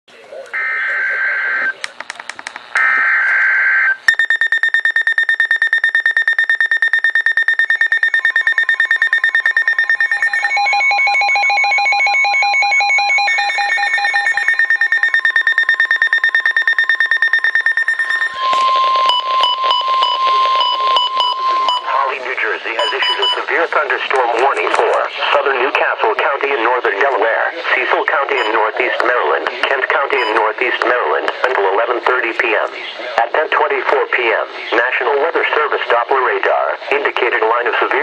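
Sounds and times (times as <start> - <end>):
electronic alarms beeping rapidly: 0.6 - 1.8, 2.8 - 26.8, 27.8 - 30.6
lower beeping alarm: 0.6 - 1.8, 2.8 - 23.7
digital two-tone warble: 2.8 - 22.2
steady warning alert tone: 2.8 - 30.8.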